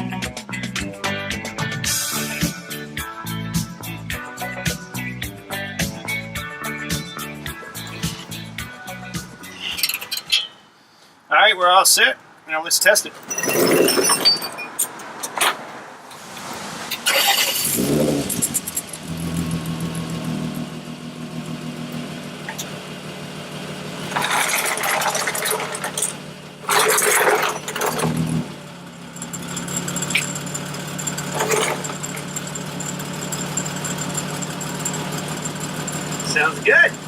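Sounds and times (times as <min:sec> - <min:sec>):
engine cranking and starting: 0:16.9 - 0:37.0
engine idling: 0:17.1 - 0:37.0.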